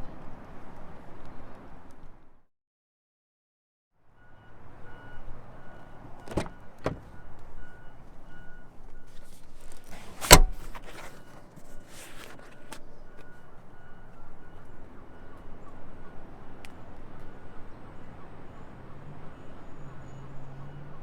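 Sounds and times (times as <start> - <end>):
car warning chime beeps: 4.2 - 17.6
car door thump: 6.2 - 7.2, 9.9 - 11.1.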